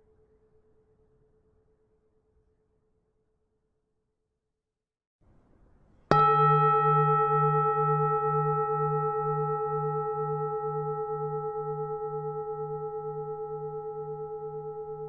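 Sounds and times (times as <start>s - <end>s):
temple bell ringing: 6.1s - 15.0s.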